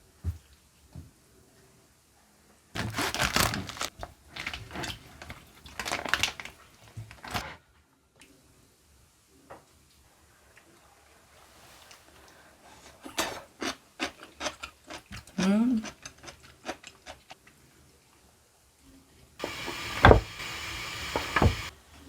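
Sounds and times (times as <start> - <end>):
crinkling and crackling: 2.8 - 7.4, 19.4 - 21.7.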